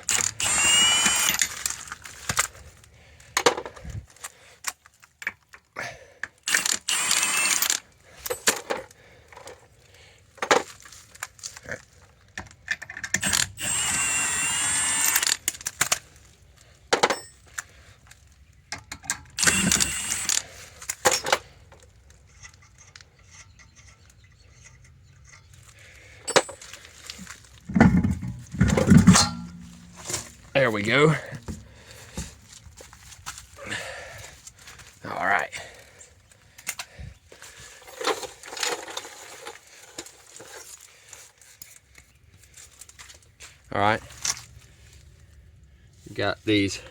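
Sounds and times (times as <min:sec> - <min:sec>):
metal tools clinking and scraping: 0:06.5 - 0:09.6, 0:17.0 - 0:33.2, 0:37.7 - 0:42.0.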